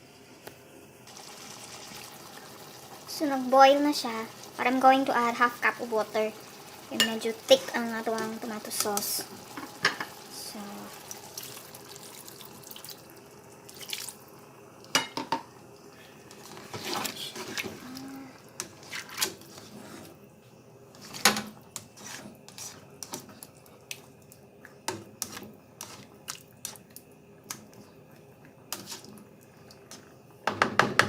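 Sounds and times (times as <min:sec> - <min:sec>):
water pouring into a pan: 0:01.1 - 0:14.4
utensil knocking against a pan: 0:30.5 - 0:31.0.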